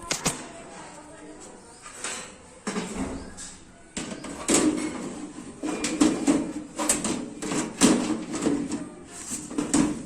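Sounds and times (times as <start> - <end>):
computer parts knocking and clattering: 4.0 - 8.8.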